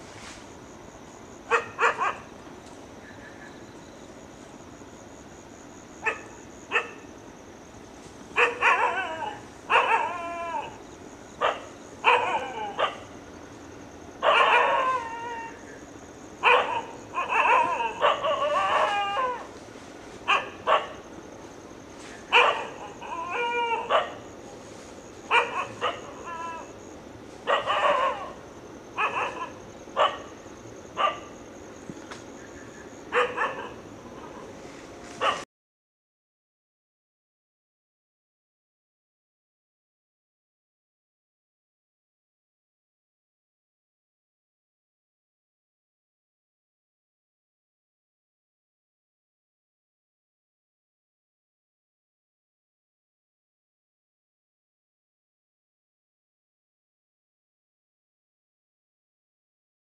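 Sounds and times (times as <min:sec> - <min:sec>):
animal yelping calls: 0:01.5 - 0:02.3, 0:08.4 - 0:10.8, 0:11.4 - 0:13.0, 0:14.2 - 0:15.8, 0:16.4 - 0:19.6, 0:22.3 - 0:24.2, 0:25.3 - 0:26.8, 0:27.4 - 0:28.4, 0:29.0 - 0:30.4, 0:33.1 - 0:34.6.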